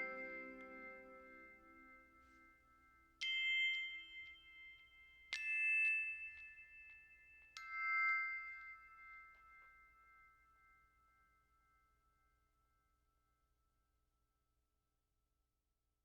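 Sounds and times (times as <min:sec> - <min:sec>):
background music: 0:00.0 - 0:02.2
high bell-like chimes: 0:00.0 - 0:12.6.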